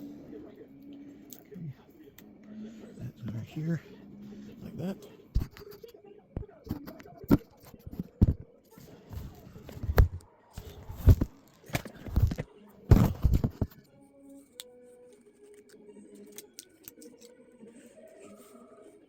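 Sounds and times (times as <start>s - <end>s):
knocks and rustles of handling: 5.4s - 14.6s.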